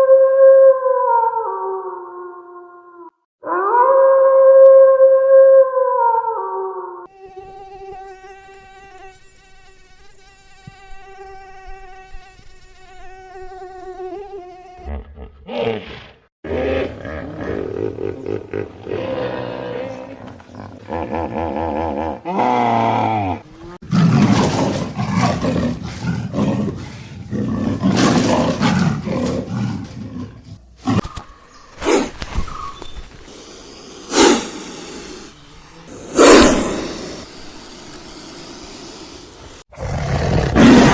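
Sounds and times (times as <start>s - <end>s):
mosquito buzzing: 7.0s - 15.1s, 31.0s - 39.6s
big cat roaring and growling: 15.0s - 31.1s, 39.7s - 40.9s.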